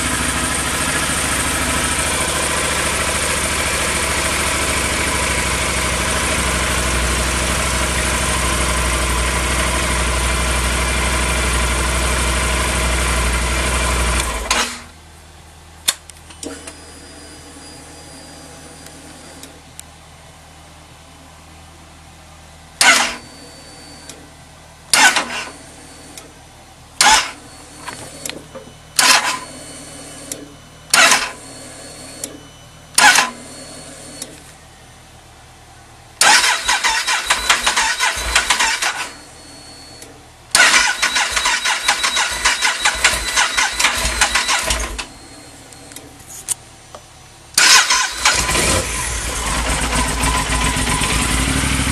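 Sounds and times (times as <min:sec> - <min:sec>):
engine cranking on starter: 0:12.7 - 0:14.9, 0:22.8 - 0:23.3, 0:24.9 - 0:25.6, 0:27.0 - 0:28.4, 0:29.0 - 0:31.4, 0:32.0 - 0:34.4, 0:36.2 - 0:46.0, 0:47.5 - 0:51.9.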